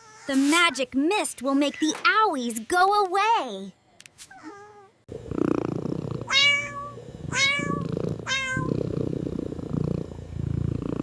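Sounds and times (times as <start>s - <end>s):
cat purring: 5.1s - 11.0s
cat meowing: 6.3s - 8.7s.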